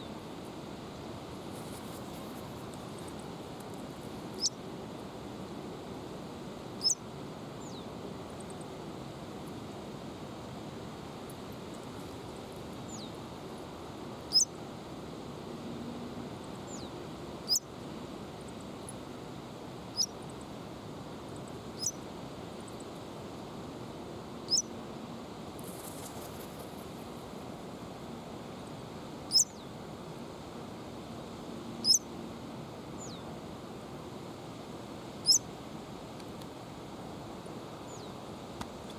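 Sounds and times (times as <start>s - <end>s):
small bird chirping: 4.4s - 4.6s, 6.8s - 7.0s, 12.9s - 13.2s, 14.3s - 14.5s, 16.7s - 16.9s, 17.5s - 17.7s, 19.9s - 20.2s, 21.8s - 22.0s, 24.5s - 24.7s, 29.3s - 29.7s, 31.8s - 32.1s, 33.0s - 33.2s, 35.2s - 35.4s, 37.9s - 38.2s.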